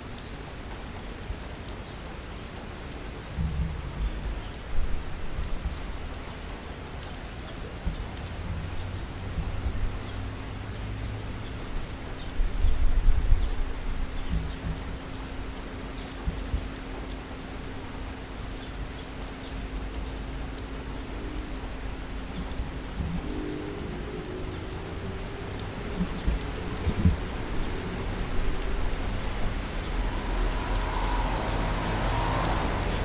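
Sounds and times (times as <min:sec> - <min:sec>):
raindrop impacts: 0:00.0 - 0:33.0
steady rain falling: 0:00.0 - 0:33.0
vehicle passing: 0:22.7 - 0:33.0.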